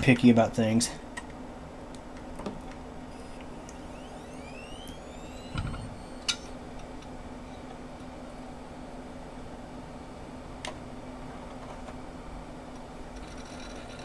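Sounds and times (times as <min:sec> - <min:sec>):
steady hum: 0:00.0 - 0:14.0
hard drive spinning up whine: 0:02.9 - 0:08.9.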